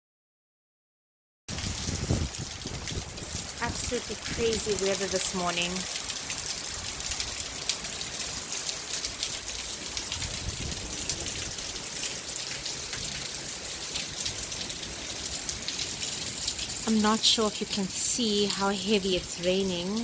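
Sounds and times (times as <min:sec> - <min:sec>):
wind gusting on microphone: 0:01.5 - 0:04.8, 0:10.1 - 0:11.8
heavy rain pattering: 0:01.5 - 0:20.0.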